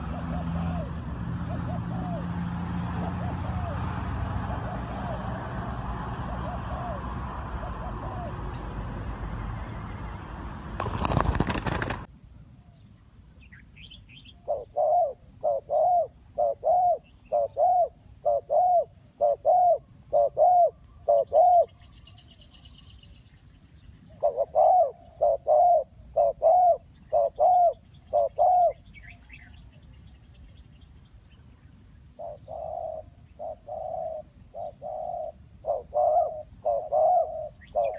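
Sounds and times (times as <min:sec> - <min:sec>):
dove cooing: 0:00.0 - 0:08.5, 0:14.4 - 0:21.8, 0:24.1 - 0:29.5, 0:32.2 - 0:37.9
birds chirping: 0:10.8 - 0:37.9.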